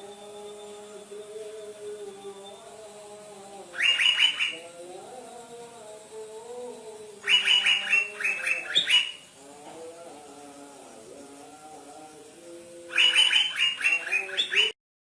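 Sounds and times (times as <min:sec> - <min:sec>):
softer lower bird tones: 0:03.6 - 0:05.4, 0:07.2 - 0:14.8
bird calling rapid repeated notes: 0:03.8 - 0:04.6, 0:07.2 - 0:09.4, 0:12.9 - 0:14.8.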